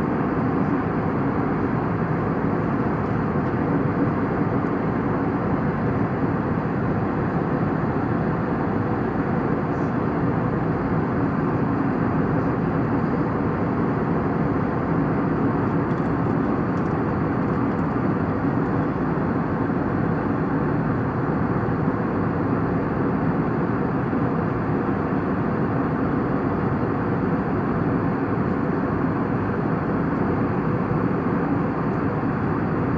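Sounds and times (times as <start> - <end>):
aircraft cabin noise: 10.8 - 22.3.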